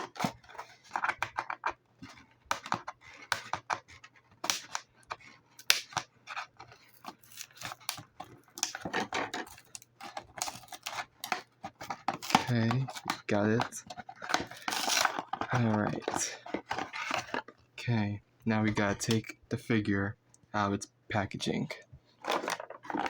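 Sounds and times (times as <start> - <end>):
packaging clicks and crackles: 0.0 - 17.7, 22.2 - 23.0.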